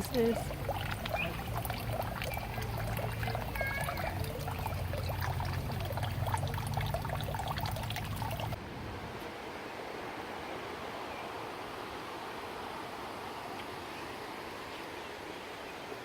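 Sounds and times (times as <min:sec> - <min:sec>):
water trickling in a stream: 0:00.0 - 0:08.6.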